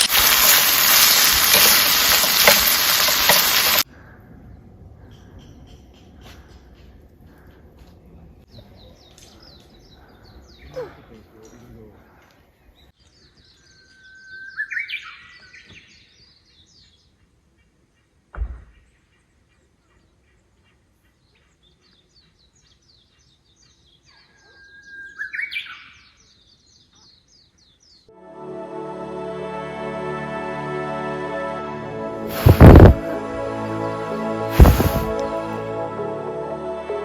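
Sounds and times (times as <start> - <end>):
small birds twittering: 0.9 - 7.7, 8.4 - 28.1
bird whistling song: 13.3 - 16.9, 23.6 - 28.1
dull thump: 34.6 - 35.2.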